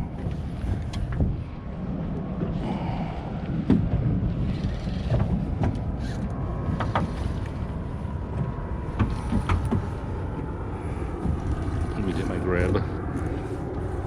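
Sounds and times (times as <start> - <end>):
boat engine rumble: 0.0 - 14.0
wind buffeting microphone: 0.0 - 14.0
sharp knocks and clicks: 6.7 - 7.2, 8.3 - 9.9.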